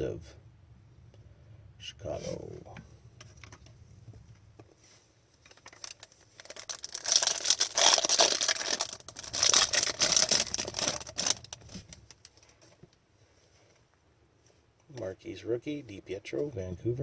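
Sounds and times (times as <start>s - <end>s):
foil wrapper tearing and crinkling: 5.4s - 12.4s.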